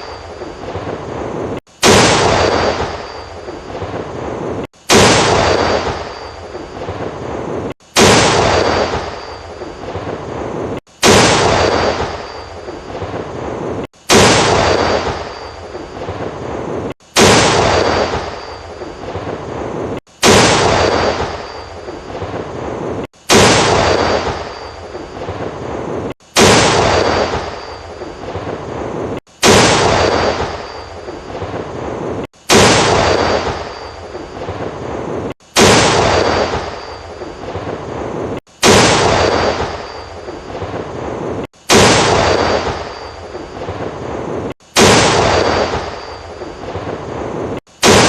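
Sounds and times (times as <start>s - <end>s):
tank gun firing: 1.8s - 3.2s, 4.9s - 6.3s, 8.0s - 9.3s, 11.0s - 12.4s, 14.1s - 15.4s, 17.2s - 18.5s, 20.2s - 21.6s, 23.3s - 24.6s, 26.4s - 27.7s, 29.4s - 30.8s, 32.5s - 33.8s, 35.6s - 36.9s, 38.6s - 40.0s, 41.7s - 43.0s, 44.8s - 46.1s, 47.8s - 48.0s.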